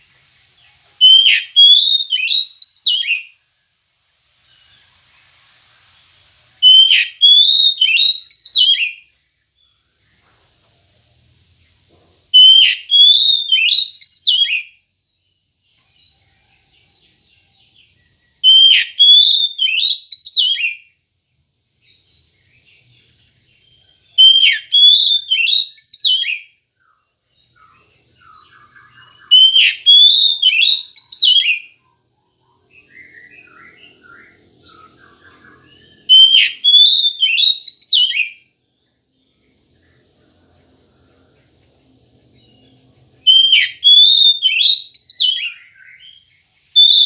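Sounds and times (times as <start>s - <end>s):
bird singing whistled phrases: 0.2s - 3.4s, 6.6s - 9.2s, 12.4s - 14.8s, 17.2s - 21.0s, 21.8s - 38.5s, 42.5s - 47.0s
soft bird twittering: 4.4s - 47.0s.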